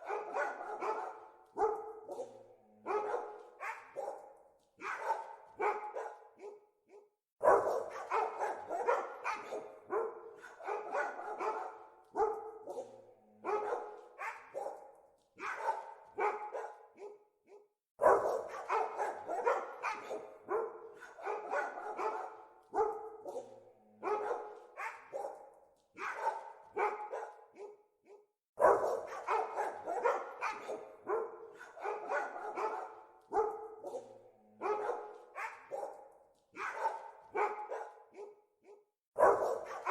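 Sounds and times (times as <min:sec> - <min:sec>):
dogs barking: 0:00.0 - 0:39.9.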